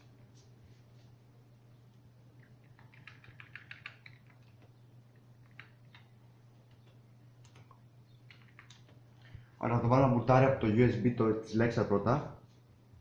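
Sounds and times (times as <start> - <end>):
steady low hum: 0.0 - 13.0
computer keyboard key presses: 2.6 - 4.7, 5.4 - 6.1, 6.7 - 9.0.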